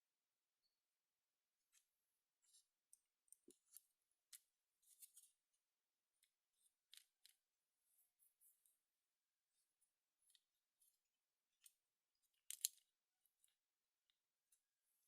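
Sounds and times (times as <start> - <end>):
small plastic parts clicking: 1.6 - 7.6, 10.2 - 14.8.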